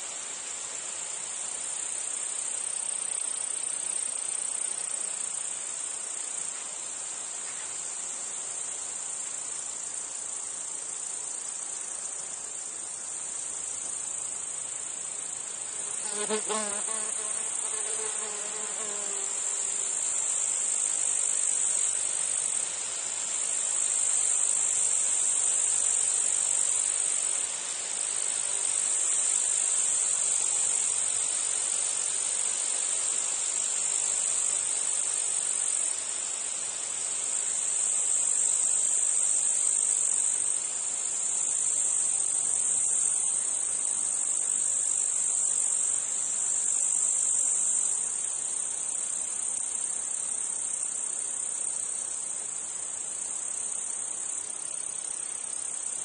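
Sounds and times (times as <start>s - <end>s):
insects trilling: 1.0s - 56.0s.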